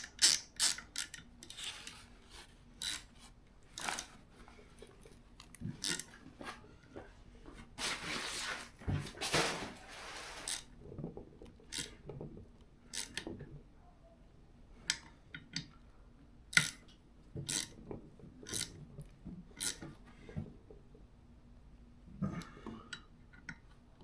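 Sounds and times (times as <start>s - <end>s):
sharp clicks and taps on metal: 14.8s - 15.8s.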